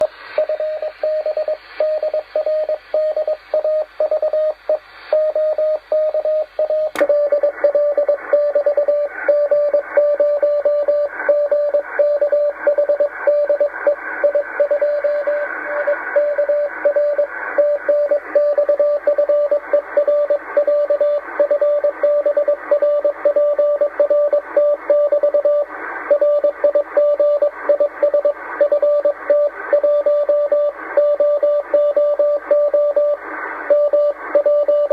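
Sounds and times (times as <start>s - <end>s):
radio static hiss: 0.0s - 2.9s, 6.5s - 29.8s, 30.7s - 34.9s
morse code tone: 0.4s - 34.9s
click: 6.9s - 7.2s.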